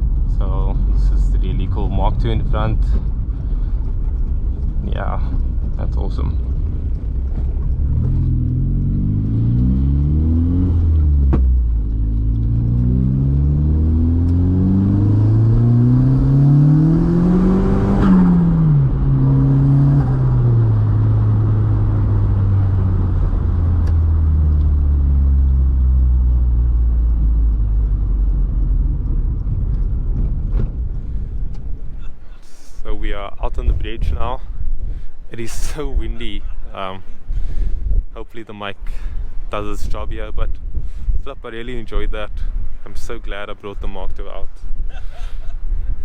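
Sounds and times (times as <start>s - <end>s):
turbocharged car engine revving: 6.8s - 31.0s.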